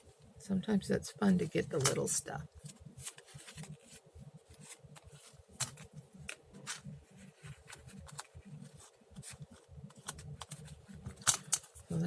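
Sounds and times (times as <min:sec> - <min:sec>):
paper rustling: 0:02.6 - 0:12.0.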